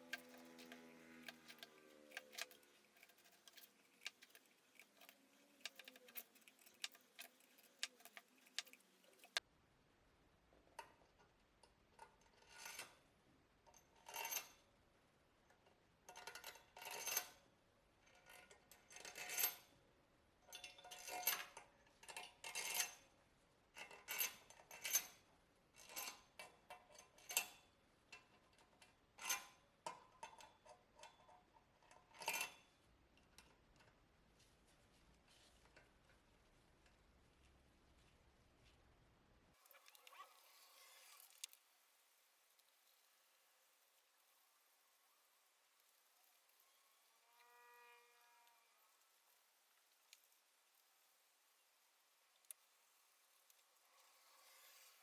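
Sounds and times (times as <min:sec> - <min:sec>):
hand tools clinking on metal: 0:00.0 - 0:09.4.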